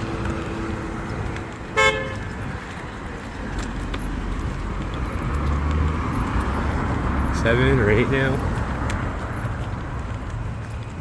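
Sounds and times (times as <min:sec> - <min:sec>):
passing traffic: 0:00.0 - 0:11.0
car horn toot: 0:01.7 - 0:02.3.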